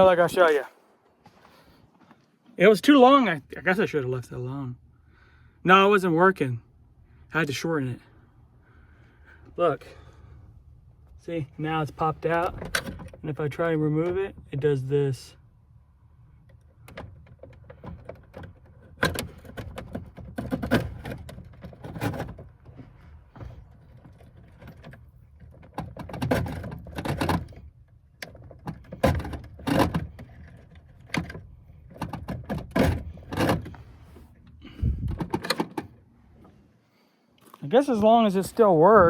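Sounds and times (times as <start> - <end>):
choke cable clunking and clicking: 12.0 - 14.7, 16.4 - 36.6.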